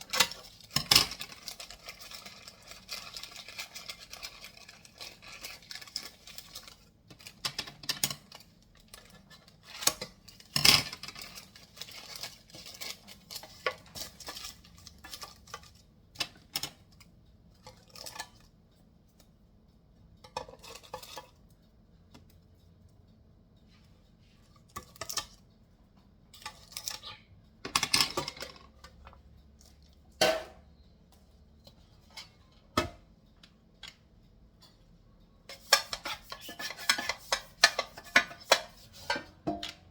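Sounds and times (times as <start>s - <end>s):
utensils and dishes clinking: 0.0s - 16.9s, 17.6s - 18.5s, 20.3s - 21.4s, 26.4s - 30.6s, 35.5s - 39.9s.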